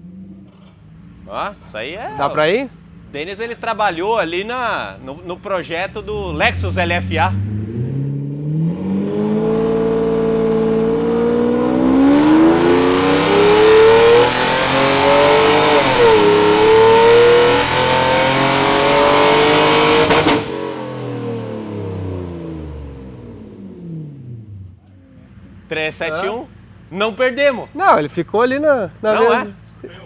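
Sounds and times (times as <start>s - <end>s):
car engine revving at full throttle: 5.1s - 24.8s.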